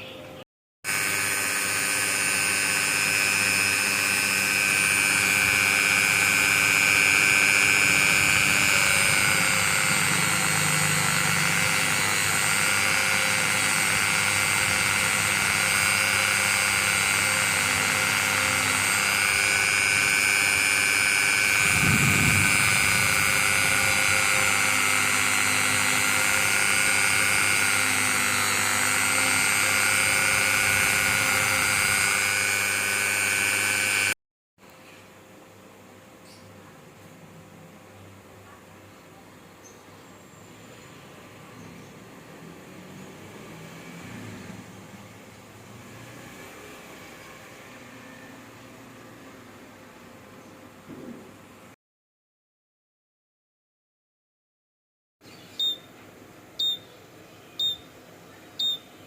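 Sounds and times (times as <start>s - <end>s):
small electric motor whine: 0.9s - 34.2s, 40.5s - 50.1s
brief low thump: 50.9s - 51.4s.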